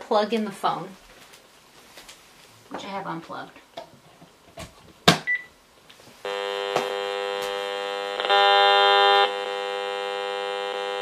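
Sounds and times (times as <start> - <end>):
rf meter buzzing: 6.2 - 11.0.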